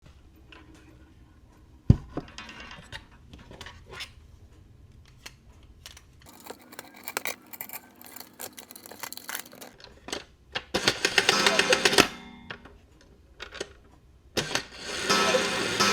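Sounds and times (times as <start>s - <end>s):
metal clock parts clicking: 6.3s - 9.8s.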